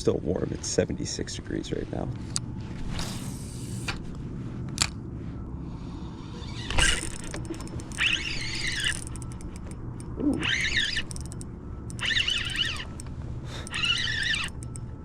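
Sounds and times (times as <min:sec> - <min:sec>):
steady low hum: 0:00.0 - 0:15.0
fishing reel whirring: 0:06.2 - 0:15.0
sharp click: 0:06.7 - 0:14.9.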